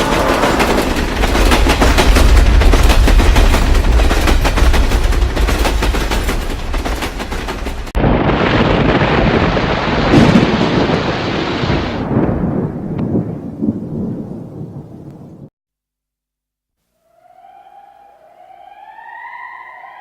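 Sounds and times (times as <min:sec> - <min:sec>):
long heavy rumble: 0:00.0 - 0:09.7.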